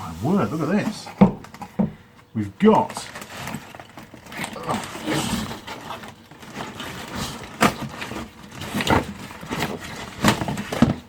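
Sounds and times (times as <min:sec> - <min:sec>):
packaging rustling and crinkling: 0:02.6 - 0:11.0
packaging cracking: 0:02.8 - 0:11.0.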